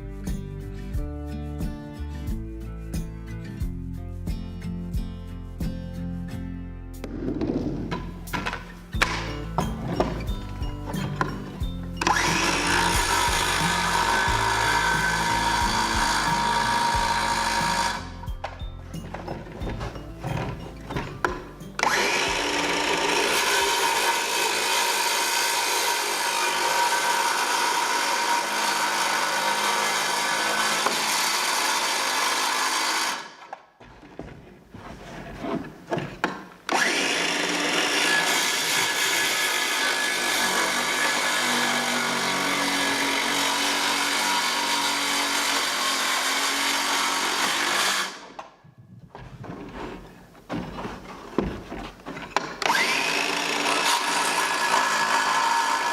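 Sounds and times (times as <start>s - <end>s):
power tool cutting wood: 7.8s - 33.6s, 36.7s - 48.5s, 52.3s - 55.9s.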